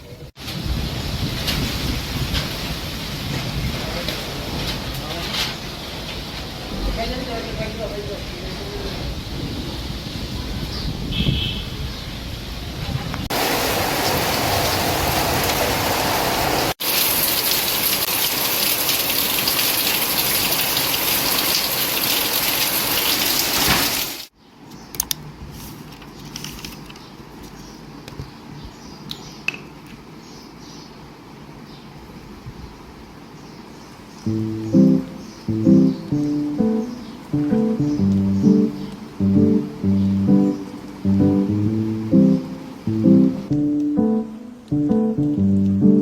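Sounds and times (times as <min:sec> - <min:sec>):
heavy rain pouring: 0:00.4 - 0:10.8, 0:12.3 - 0:24.3.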